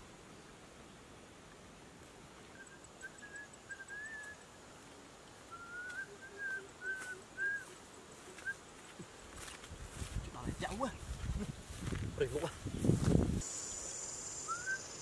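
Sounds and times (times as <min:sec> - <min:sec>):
high whistled notes: 0:05.5 - 0:07.7, 0:13.4 - 0:15.0.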